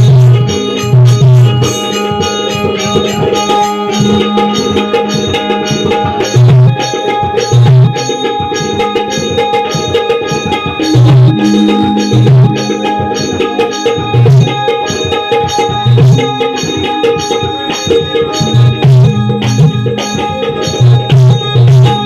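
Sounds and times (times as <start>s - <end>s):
held melodic tones: 0.0s - 22.0s
deep hand-drum strokes: 10.8s - 16.4s.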